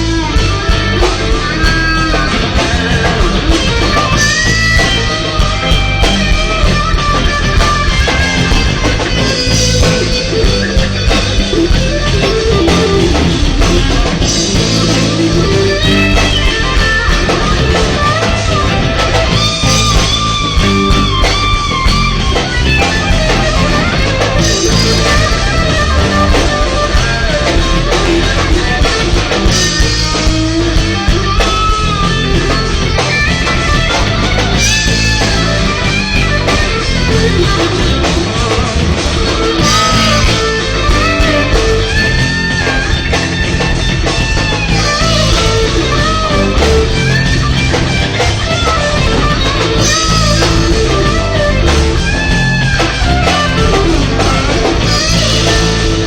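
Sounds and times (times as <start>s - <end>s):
bass guitar: 0.0s - 56.0s
drums: 0.0s - 56.0s
electric lead guitar bending notes: 0.0s - 56.0s.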